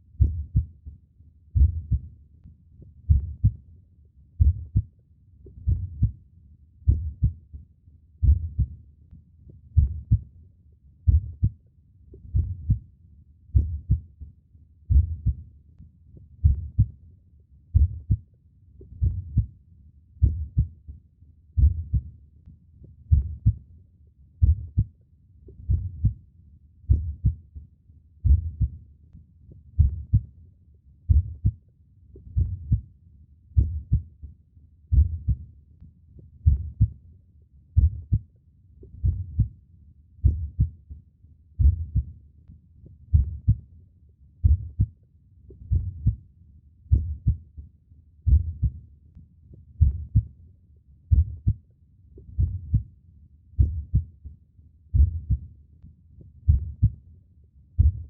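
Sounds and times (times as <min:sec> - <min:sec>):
human heartbeat: 0:00.2 - 0:00.9, 0:01.5 - 0:02.1, 0:02.8 - 0:03.6, 0:04.4 - 0:04.9, 0:05.5 - 0:06.2, 0:06.8 - 0:08.8, 0:09.5 - 0:10.3, 0:11.0 - 0:12.9, 0:13.5 - 0:15.6, 0:16.2 - 0:17.0, 0:17.7 - 0:19.6, 0:20.2 - 0:22.2, 0:22.8 - 0:23.7, 0:24.4 - 0:26.2, 0:26.8 - 0:27.6, 0:28.2 - 0:28.8, 0:29.5 - 0:30.4, 0:31.1 - 0:32.9, 0:33.6 - 0:34.3, 0:34.9 - 0:35.5, 0:36.2 - 0:37.0, 0:37.8 - 0:39.6, 0:40.2 - 0:40.9, 0:41.6 - 0:42.2, 0:42.9 - 0:43.7, 0:44.4 - 0:46.2, 0:46.9 - 0:47.6, 0:48.2 - 0:48.9, 0:49.5 - 0:50.4, 0:51.1 - 0:51.6, 0:52.2 - 0:52.9, 0:53.6 - 0:55.6, 0:56.2 - 0:57.0, 0:57.8 - 0:58.0.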